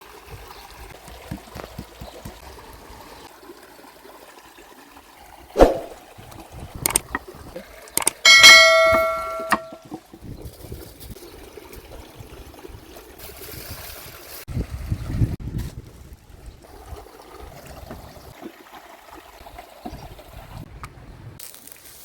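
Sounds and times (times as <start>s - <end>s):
clicks: 8.0s - 9.8s
metal object ringing like a bell: 8.2s - 9.8s.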